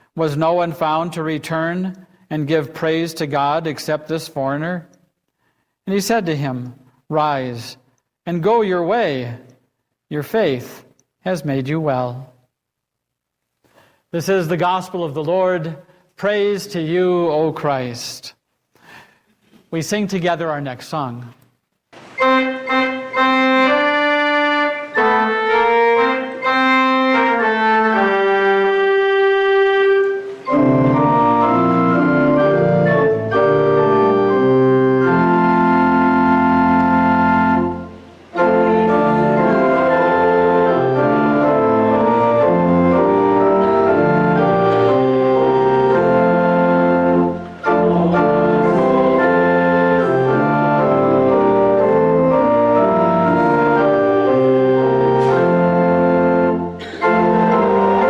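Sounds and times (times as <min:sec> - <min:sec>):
church organ playing hymn: 0:00.0 - 0:04.9, 0:22.0 - 0:58.0.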